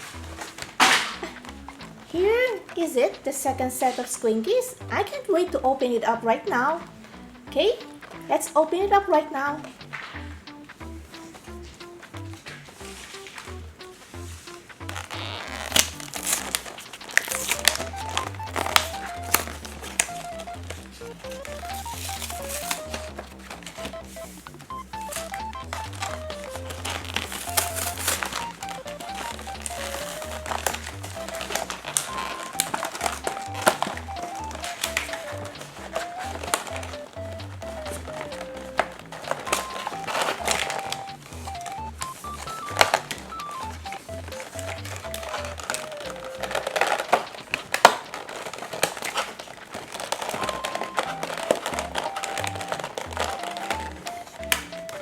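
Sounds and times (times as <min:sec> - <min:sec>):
sharp plastic crack: 0:00.0 - 0:02.8, 0:09.6 - 0:55.0
light background music: 0:00.0 - 0:55.0
simple background tune: 0:00.0 - 0:55.0
plastic packaging crinkling: 0:12.5 - 0:55.0.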